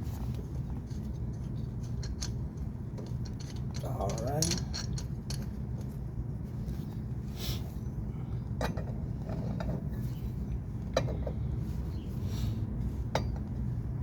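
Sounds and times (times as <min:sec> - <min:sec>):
metal parts clinking: 0:00.9 - 0:05.6.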